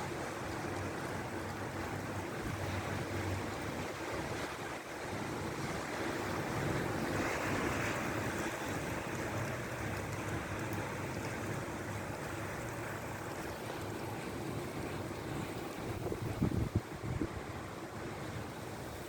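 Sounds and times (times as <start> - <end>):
strong storm wind rushing: 15.9 - 17.4.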